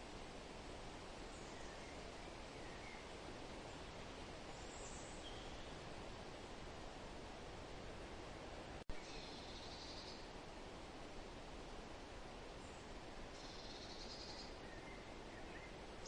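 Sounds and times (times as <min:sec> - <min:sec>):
wind rustling leaves: 0:00.0 - 0:16.0
faint bird chirps: 0:01.3 - 0:03.1, 0:04.5 - 0:05.8, 0:08.9 - 0:10.3, 0:12.6 - 0:15.8.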